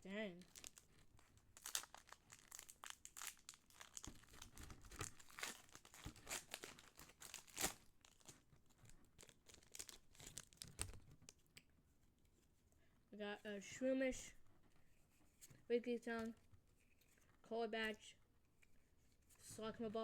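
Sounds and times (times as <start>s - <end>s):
foil wrapper crinkling and tearing: 0.4s - 11.4s.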